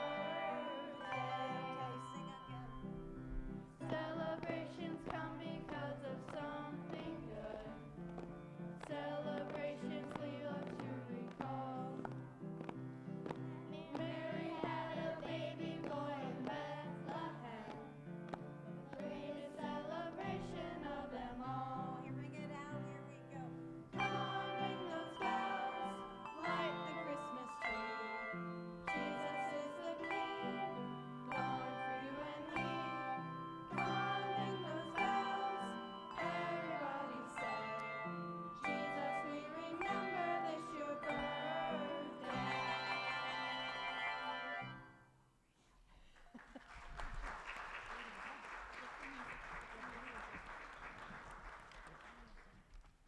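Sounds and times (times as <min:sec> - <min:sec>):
voices singing along: 0:00.0 - 0:02.8, 0:03.8 - 0:07.8, 0:13.7 - 0:17.8, 0:19.0 - 0:22.2, 0:24.0 - 0:44.8
handbell choir playing: 0:00.0 - 0:07.7, 0:24.0 - 0:45.0.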